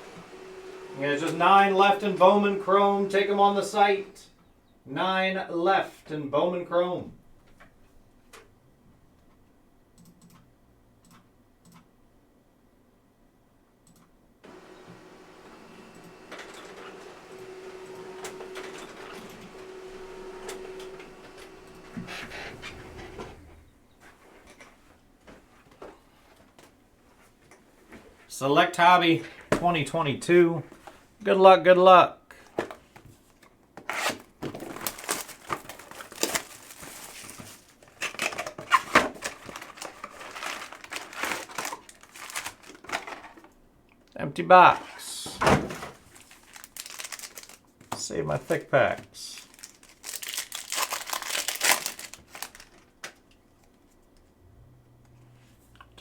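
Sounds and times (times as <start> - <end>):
steady hum: 14.4 - 23.6
plastic wrap crinkling and tearing: 33.9 - 43.1, 46.0 - 47.7, 49.3 - 53.2.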